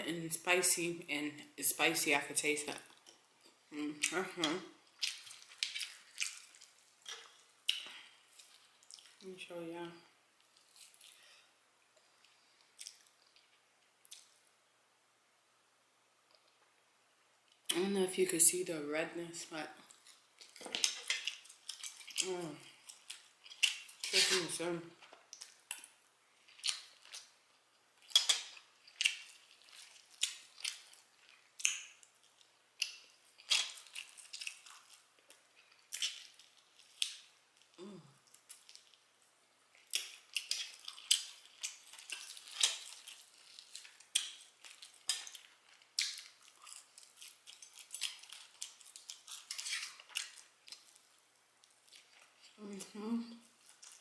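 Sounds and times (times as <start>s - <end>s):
chewing crunches: 5.0s - 9.2s, 19.9s - 24.2s, 28.0s - 39.1s, 39.7s - 52.6s, 53.4s - 54.0s
person humming: 37.8s - 38.1s, 52.6s - 53.4s.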